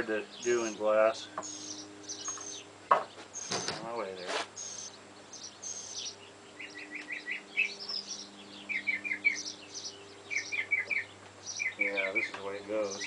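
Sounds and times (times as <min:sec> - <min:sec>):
birds chirping: 0:00.0 - 0:13.0
faint steady hum: 0:00.0 - 0:13.0.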